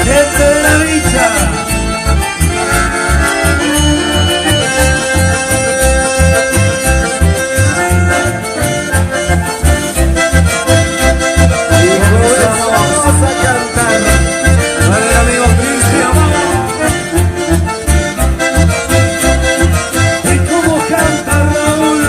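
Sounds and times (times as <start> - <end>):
accordion: 0.0 - 22.0
live band playing: 0.0 - 22.0
steady bass beat: 0.0 - 22.0.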